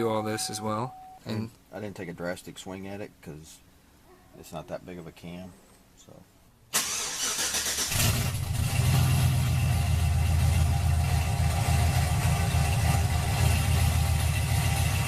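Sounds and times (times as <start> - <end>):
car engine starting and idling: 6.7 - 15.0.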